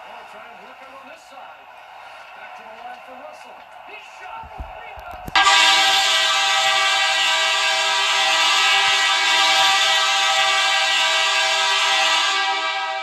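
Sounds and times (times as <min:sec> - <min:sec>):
arena goal horn blast: 0:05.4 - 0:13.0.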